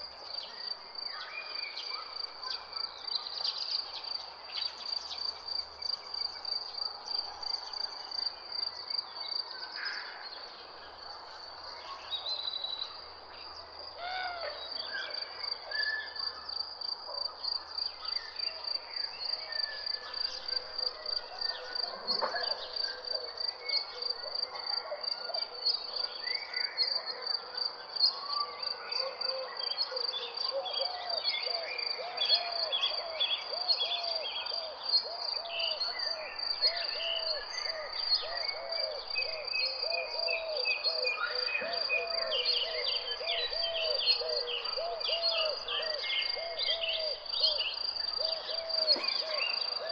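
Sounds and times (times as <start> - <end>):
birds calling and singing: 30.5 - 49.9.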